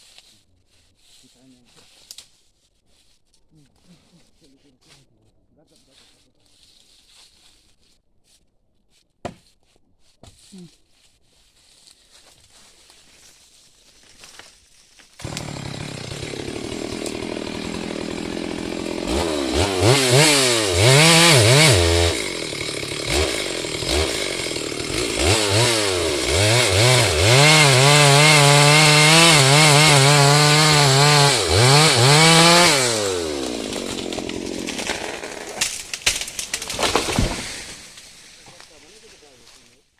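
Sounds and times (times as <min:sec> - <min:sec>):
chainsaw engine revving: 0:15.2 - 0:37.9.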